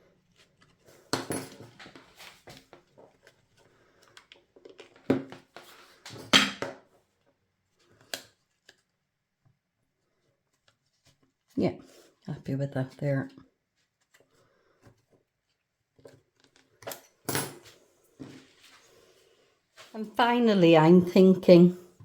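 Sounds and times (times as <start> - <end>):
paper rustling: 13.7 - 15.6.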